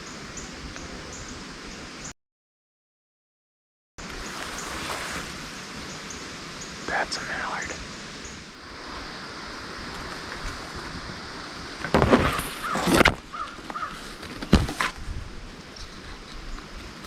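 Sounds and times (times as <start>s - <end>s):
harsh cawing bird calls: 12.6s - 14.0s.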